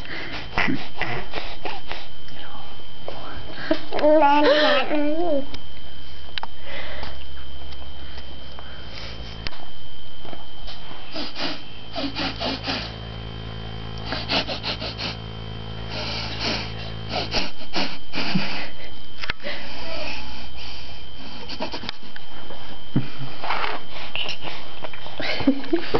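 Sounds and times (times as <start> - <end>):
baby sniffing through nose: 10.7 - 13.0, 14.0 - 15.2, 15.9 - 18.4.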